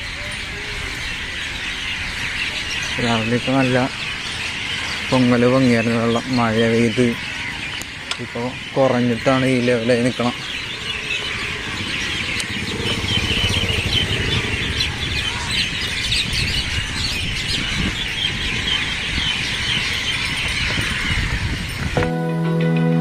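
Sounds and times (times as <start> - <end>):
birds chirping: 0.0 - 22.0
low outdoor rumble: 9.8 - 16.3
music: 22.0 - 23.0.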